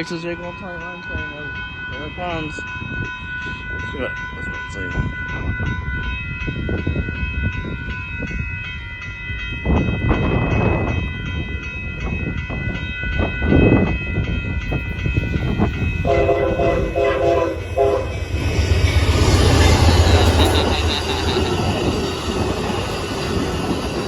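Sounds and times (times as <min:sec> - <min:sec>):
crossing bell ringing: 0:00.0 - 0:24.0
train rumble: 0:00.0 - 0:24.0
train horn short blasts: 0:16.0 - 0:18.2.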